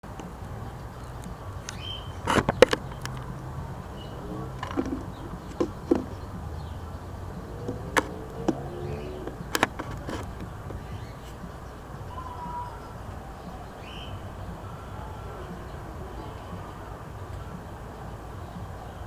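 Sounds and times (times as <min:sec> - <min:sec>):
sharp taps and clicks: 0:00.1 - 0:03.6, 0:04.5 - 0:06.5, 0:07.4 - 0:11.5.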